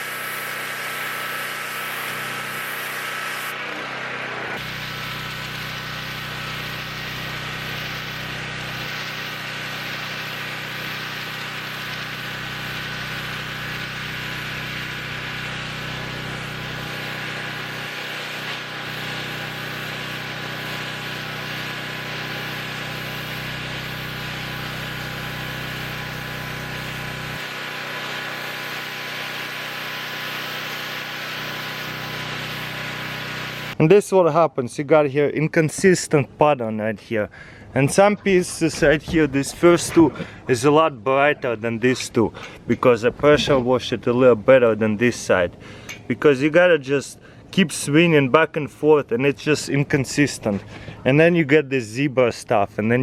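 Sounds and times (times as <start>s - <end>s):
high-pressure water jet hissing on wood: 0.0s - 33.8s
pressure washer motor drone: 0.0s - 33.8s.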